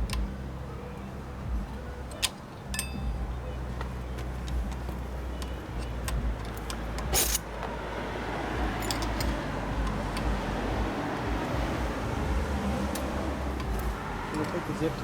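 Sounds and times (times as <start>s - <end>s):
light metallic clinks: 2.1s - 3.2s, 3.8s - 7.5s, 8.7s - 10.3s
metallic clatter: 5.7s - 7.5s.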